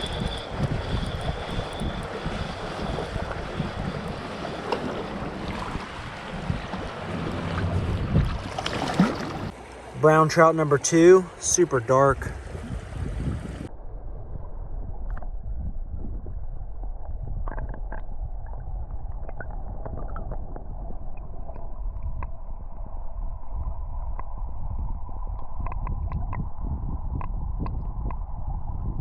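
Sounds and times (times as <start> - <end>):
wind rumble on microphone: 0.0 - 9.6, 12.2 - 29.0
creek water running: 0.0 - 13.6
water splashes and drips: 4.0 - 11.4.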